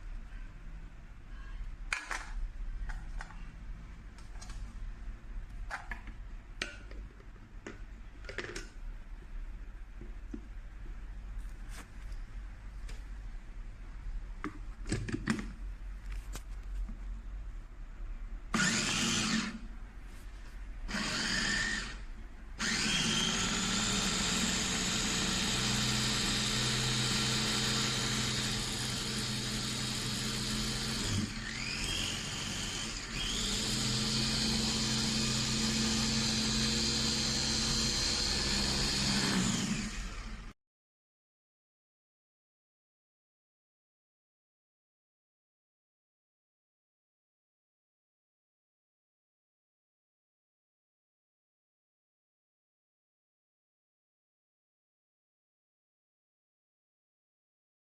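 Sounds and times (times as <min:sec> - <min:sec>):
electric food processor motor: 0:18.6 - 0:19.6, 0:20.9 - 0:22.0, 0:22.6 - 0:40.5.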